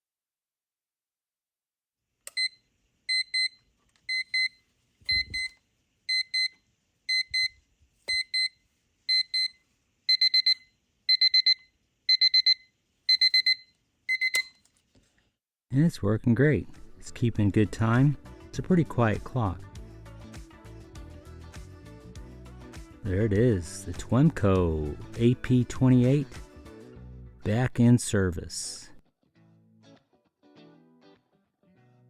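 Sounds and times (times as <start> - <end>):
high electronic alarm beep: 5.1 - 5.5, 10.1 - 14.5.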